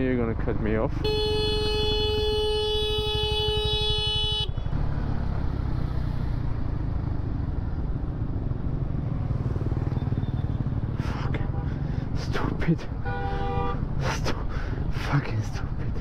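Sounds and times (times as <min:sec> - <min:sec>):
motorcycle running in traffic: 0:00.0 - 0:14.2
vehicle horn blast: 0:01.0 - 0:04.6, 0:13.0 - 0:13.8.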